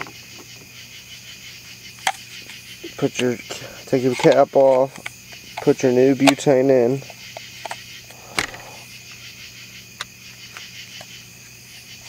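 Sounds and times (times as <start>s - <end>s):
insects chorus: 0.0s - 12.0s
plastic clicks and handling knocks: 4.0s - 8.6s.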